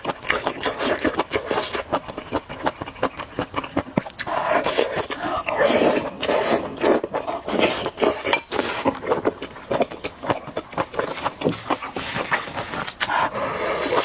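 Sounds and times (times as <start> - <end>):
noodles slurped and chewed: 0.0 - 14.0
utensils clinking against bowl: 8.2 - 8.7.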